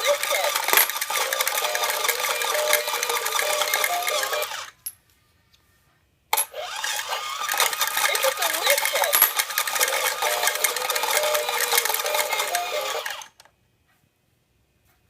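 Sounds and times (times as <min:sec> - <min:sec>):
toy electronic sound effect: 0:00.0 - 0:04.7, 0:06.5 - 0:13.3
toy mechanism clicking: 0:00.0 - 0:04.9, 0:06.4 - 0:13.5.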